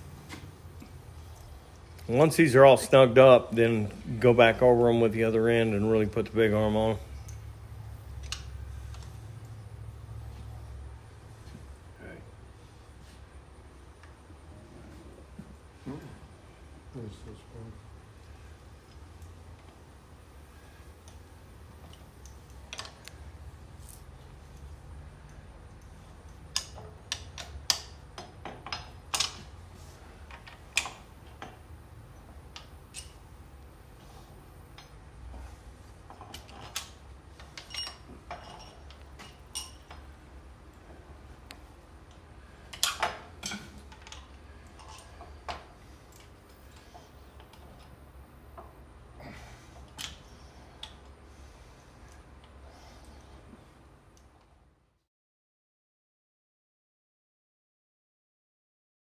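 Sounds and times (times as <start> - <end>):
low steady hum: 0.0 - 55.0
hand tools clinking on metal: 37.5 - 40.0.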